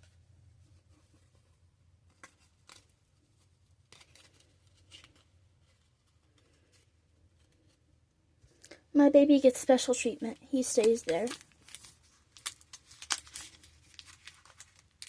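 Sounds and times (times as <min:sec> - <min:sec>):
trading cards tapping and rustling: 0:10.3 - 0:15.0.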